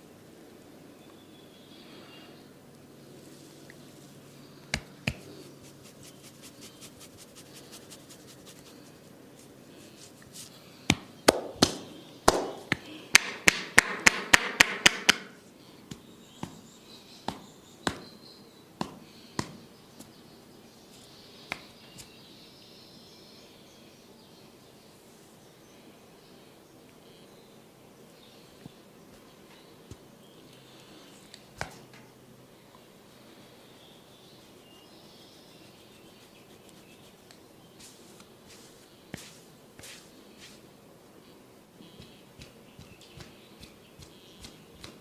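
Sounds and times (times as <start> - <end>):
hands slapping a head: 4.7 - 8.7, 10.9 - 15.3, 17.3 - 18.1, 18.8 - 19.6, 21.5 - 22.1, 31.3 - 32.0, 36.6 - 40.6, 42.0 - 45.0.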